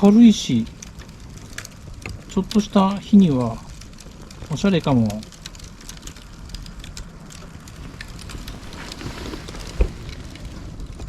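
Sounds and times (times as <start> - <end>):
bamboo fire crackling: 0.0 - 11.0.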